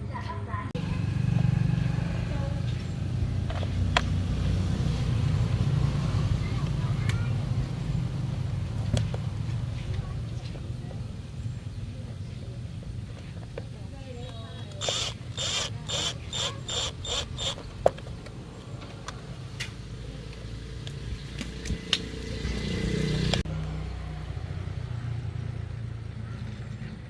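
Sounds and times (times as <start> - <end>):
sharp clicks: 14.2 - 18.4.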